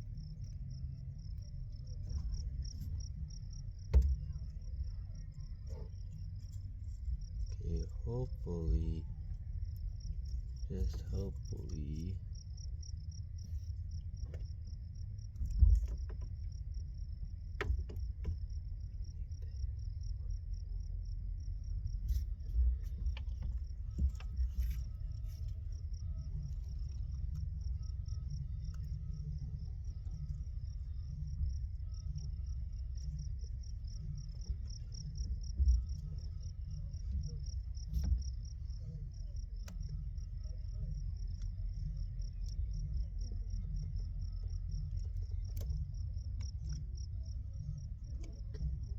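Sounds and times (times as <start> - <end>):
crickets chirping: 0.0 - 48.9
low rumble: 0.0 - 48.9.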